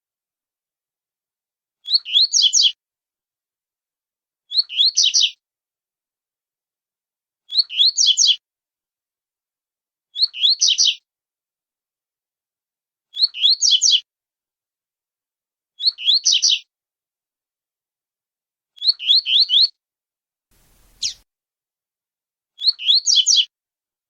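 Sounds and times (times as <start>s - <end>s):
songbird singing: 20.6s - 21.2s.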